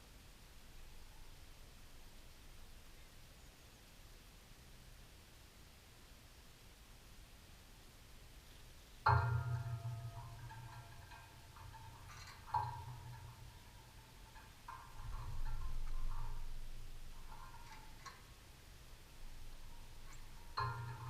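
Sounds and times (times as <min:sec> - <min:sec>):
knocks with metallic ringing: 0:09.1 - 0:21.0.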